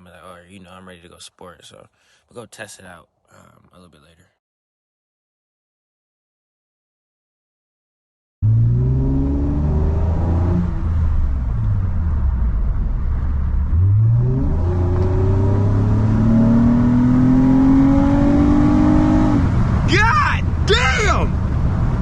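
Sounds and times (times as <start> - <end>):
car engine revving while driving: 8.4 - 19.9.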